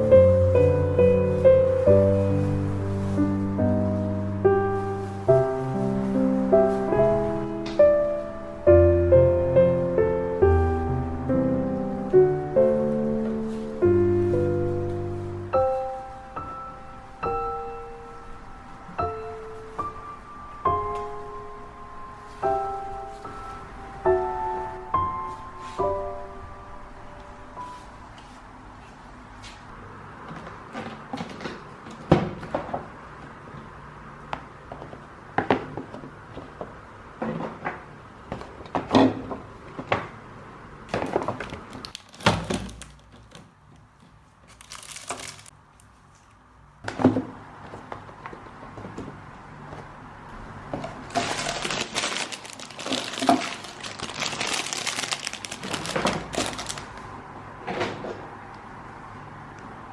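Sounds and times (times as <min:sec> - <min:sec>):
wrapping crinkling: 0:00.4 - 0:07.5, 0:40.9 - 0:46.5, 0:51.0 - 0:57.1
objects knocking and clunking: 0:40.9 - 0:45.5.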